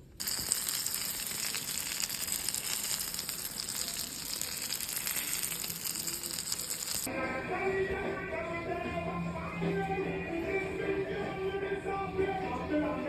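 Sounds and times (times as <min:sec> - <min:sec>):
food sizzling in hot oil: 0:00.0 - 0:07.1.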